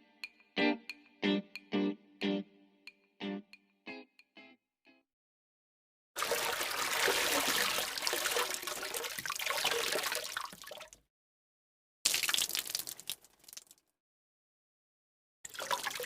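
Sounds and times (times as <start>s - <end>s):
plucked guitar jingle: 0.0s - 2.6s
water pouring and splashing: 6.2s - 11.0s, 12.1s - 13.8s, 15.5s - 16.0s.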